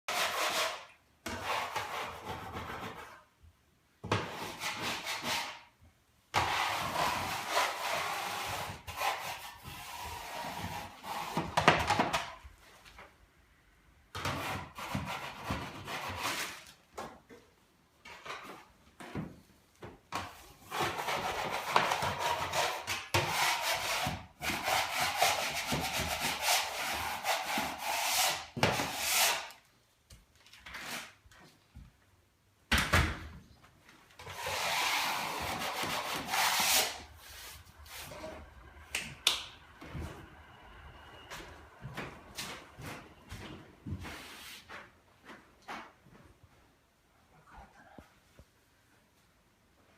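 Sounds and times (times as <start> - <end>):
wood rubbing saw-like strokes: 34.3 - 39.4.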